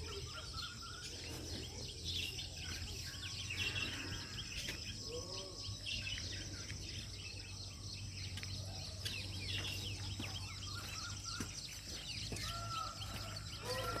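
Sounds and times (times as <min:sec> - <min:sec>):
small birds chirping: 0:00.0 - 0:14.0
arched bird call: 0:10.0 - 0:14.0.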